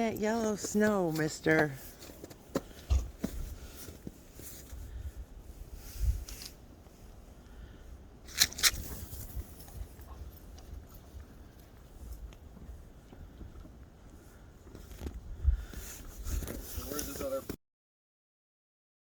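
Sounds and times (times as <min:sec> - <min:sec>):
crunching and scraping in snow: 0:00.0 - 0:07.3, 0:08.2 - 0:10.2, 0:14.8 - 0:17.6.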